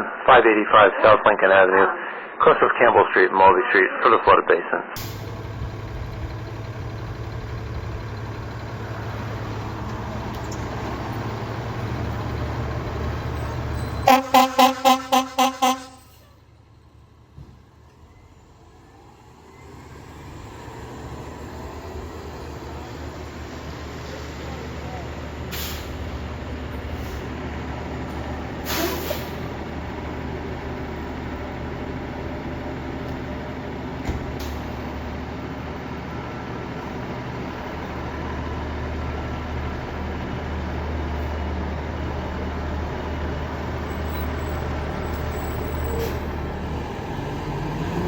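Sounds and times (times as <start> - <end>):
diesel engine humming: 5.0 - 48.0
air brakes hiss: 25.5 - 26.0, 28.6 - 29.4.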